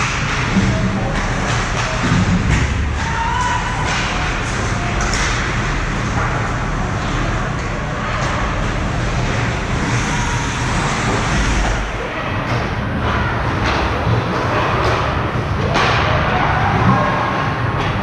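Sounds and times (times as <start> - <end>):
faint knocks of sticks or puck: 0.0 - 5.6.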